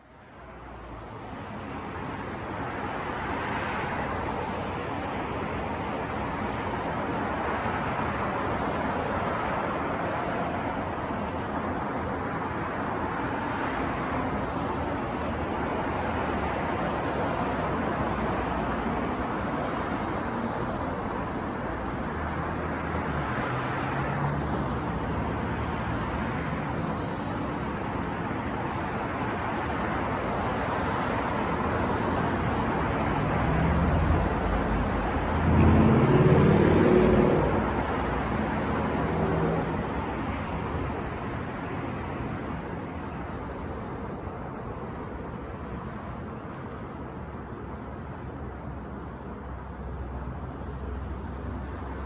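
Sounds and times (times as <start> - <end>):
passing cars: 0.0 - 52.0
vehicle passing with low engine: 32.1 - 44.4.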